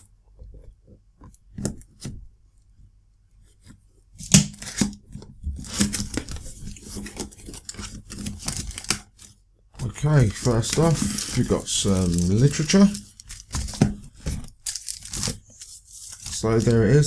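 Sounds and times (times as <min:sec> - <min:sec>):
cardboard snapping: 0:04.2 - 0:05.0, 0:05.6 - 0:09.1, 0:10.2 - 0:16.9
cardboard rustling and tearing: 0:04.6 - 0:17.0.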